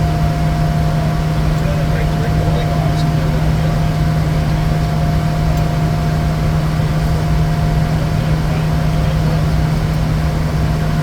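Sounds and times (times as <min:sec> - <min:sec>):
jet cabin drone: 0:00.0 - 0:11.0.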